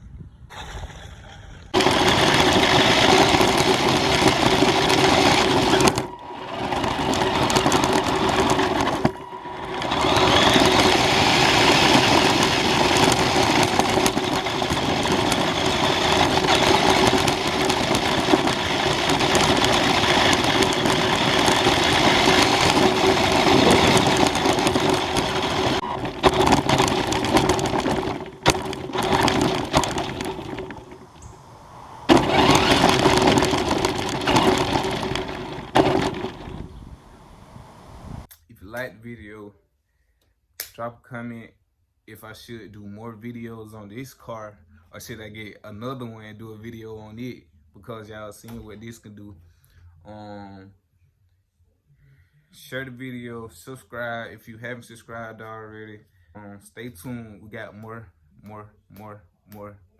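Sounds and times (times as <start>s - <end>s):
toy car electric motor whine: 0.5s - 38.3s
tyres running over ground: 0.5s - 38.3s.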